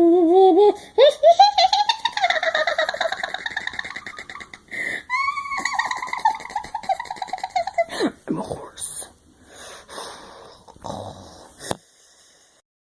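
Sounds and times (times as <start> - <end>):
person breathing: 4.7 - 5.2, 9.4 - 12.6.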